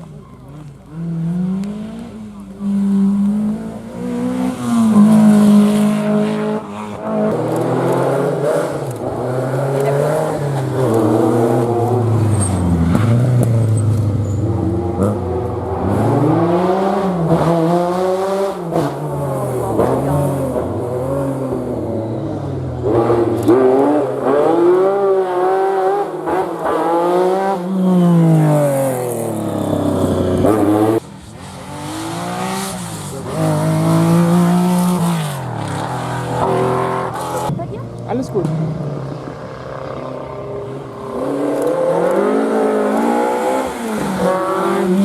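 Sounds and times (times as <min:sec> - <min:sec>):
rally car engines revving: 0:00.0 - 0:45.0.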